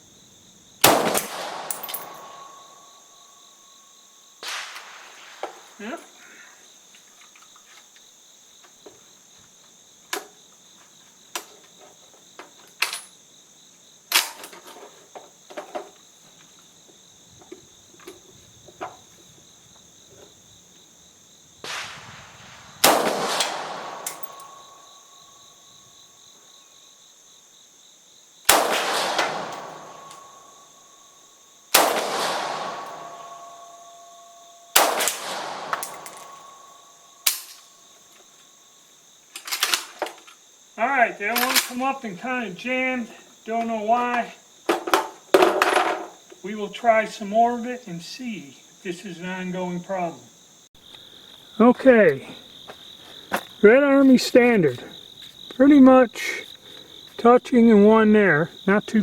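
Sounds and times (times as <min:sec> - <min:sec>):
rifle shots with echo: 0:00.8 - 0:03.2, 0:04.4 - 0:05.8, 0:21.6 - 0:25.2, 0:28.5 - 0:30.8, 0:31.7 - 0:37.6.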